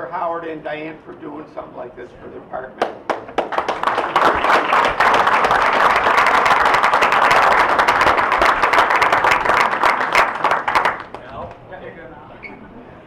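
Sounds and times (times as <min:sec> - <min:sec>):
audience applauding: 0:03.1 - 0:11.5.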